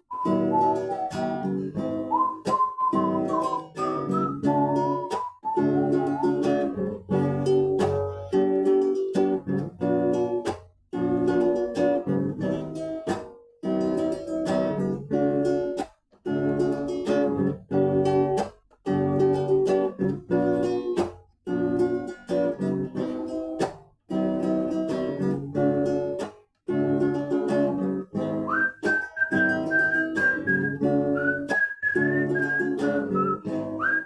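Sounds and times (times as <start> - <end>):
person whistling a melody: 0.0 - 7.0, 28.2 - 34.0
acoustic guitar strumming chords: 0.0 - 34.0.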